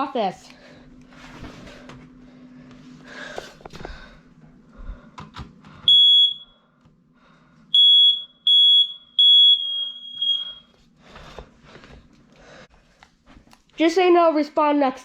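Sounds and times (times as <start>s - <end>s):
smoke alarm beeping: 5.9s - 6.7s, 7.7s - 10.8s.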